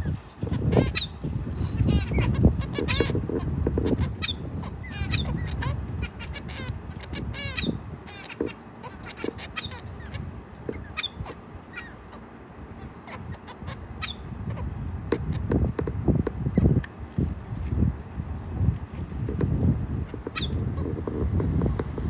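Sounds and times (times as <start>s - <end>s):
finch nasal chirps: 0.0s - 12.2s.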